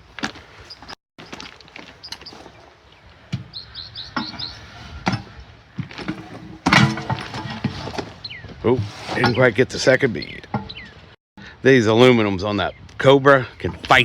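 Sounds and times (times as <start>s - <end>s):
small bird chirping: 2.0s - 4.7s, 10.2s - 11.0s
clicks and knocks of tire work: 3.3s - 9.5s, 10.4s - 10.9s.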